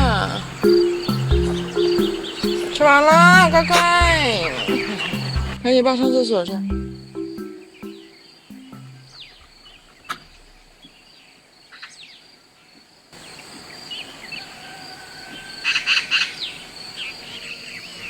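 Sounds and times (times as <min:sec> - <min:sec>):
bird chirps: 0:00.0 - 0:11.1.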